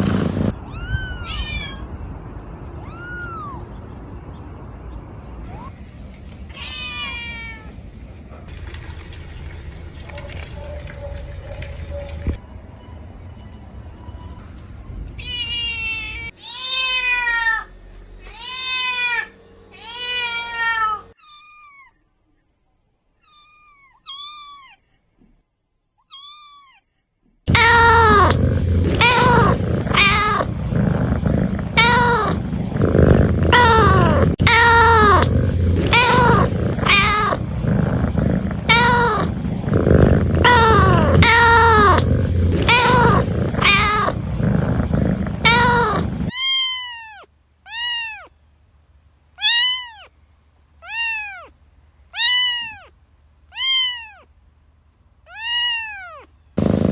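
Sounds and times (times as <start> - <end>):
kittens meowing: 0.6 - 1.9, 2.8 - 3.8, 27.5 - 48.3, 49.4 - 50.1, 50.8 - 51.5, 52.1 - 52.9, 53.5 - 54.3, 55.3 - 56.3
background noise: 46.2 - 56.9.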